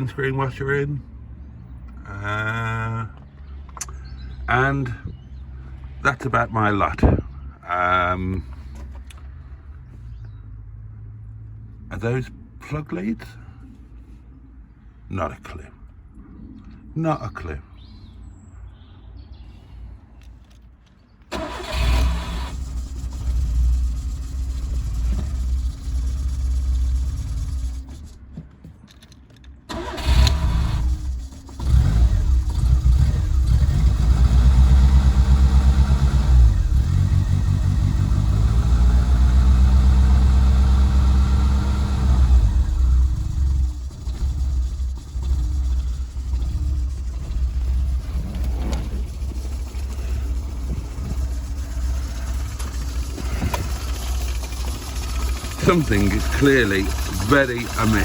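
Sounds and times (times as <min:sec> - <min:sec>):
car engine starting and running roughly: 0:21.2 - 0:58.0.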